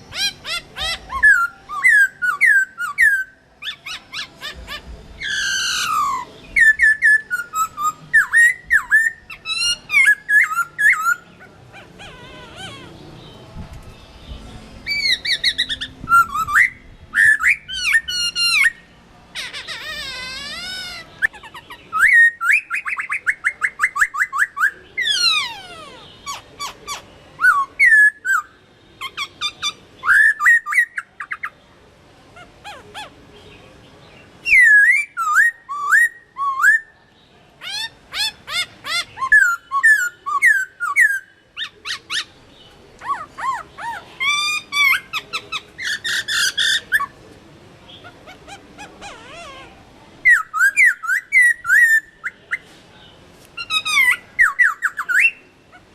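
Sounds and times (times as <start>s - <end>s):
bird singing whistled phrases: 0.1s - 4.6s, 5.2s - 11.3s, 14.9s - 18.9s, 21.2s - 25.6s, 26.2s - 31.5s, 34.4s - 36.9s, 38.2s - 42.3s, 50.3s - 52.6s, 53.6s - 55.5s.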